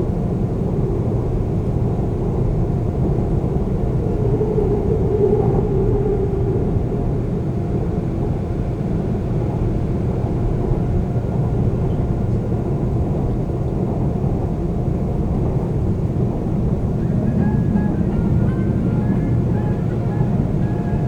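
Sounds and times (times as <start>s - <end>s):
subway train wheels rumbling: 0.0s - 21.0s
faint high steady tones: 17.0s - 21.0s.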